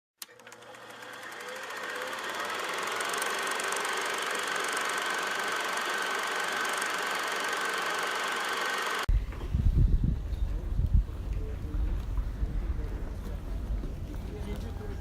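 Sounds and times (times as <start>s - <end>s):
machine motor running: 0.2s - 9.1s
fine rapid rattle: 0.4s - 9.1s
steady high whine: 1.0s - 9.1s.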